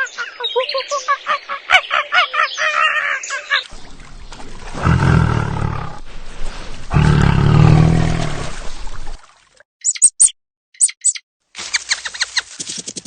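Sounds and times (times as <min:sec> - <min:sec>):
large animal roaring: 0:04.6 - 0:06.2, 0:06.9 - 0:08.6
quick repeated bird calls: 0:09.8 - 0:12.8.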